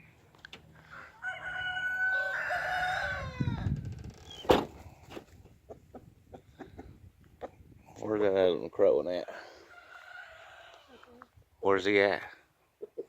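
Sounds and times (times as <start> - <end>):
rooster crowing: 0.8 - 3.7, 9.6 - 11.1.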